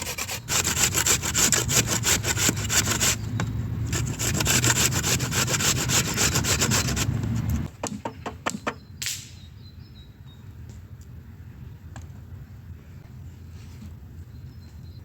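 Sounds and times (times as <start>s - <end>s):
rapid rasping grating strokes: 0.0s - 3.2s, 3.9s - 7.7s.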